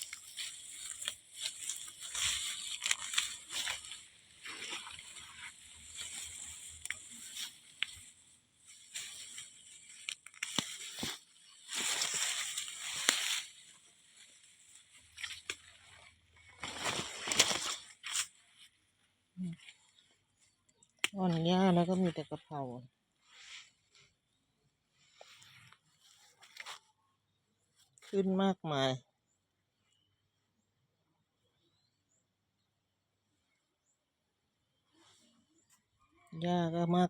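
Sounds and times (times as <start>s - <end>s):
wet grass rustling and tearing: 0.0s - 18.8s.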